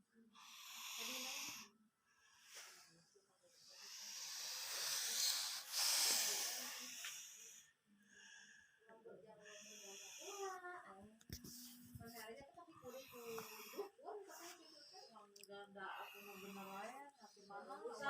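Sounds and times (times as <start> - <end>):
person snoring: 0.4 - 1.7, 3.8 - 7.2.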